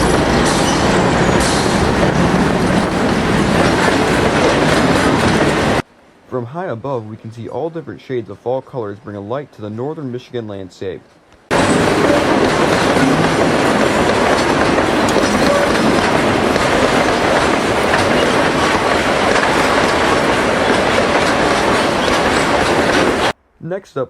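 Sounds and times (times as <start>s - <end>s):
train cars rolling on rails: 0.0s - 6.2s, 10.8s - 23.4s.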